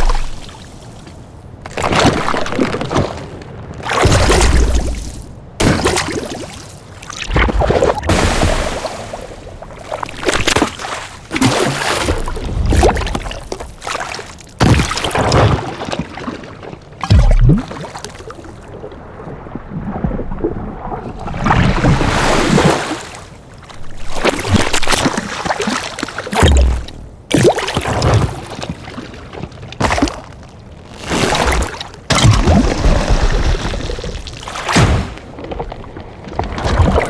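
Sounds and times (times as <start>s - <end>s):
water sloshing and gurgling: 0.0s - 37.0s
water splashing: 0.0s - 37.0s
deep low thump: 26.4s - 27.1s.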